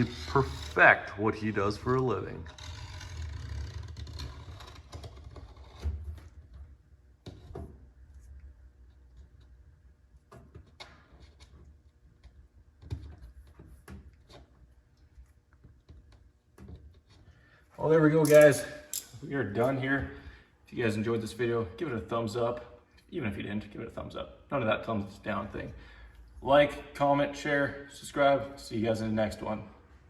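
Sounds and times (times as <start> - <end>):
hand tool clicks and scrapes: 18.2 - 19.2.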